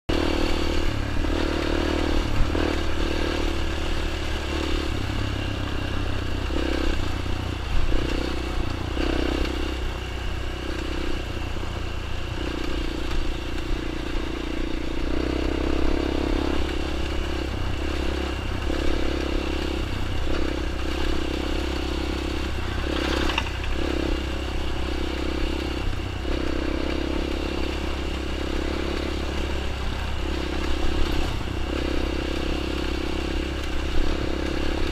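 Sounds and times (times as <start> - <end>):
dirt bike engine revving: 0.1 - 34.9
knocks and clatters: 23.0 - 23.9.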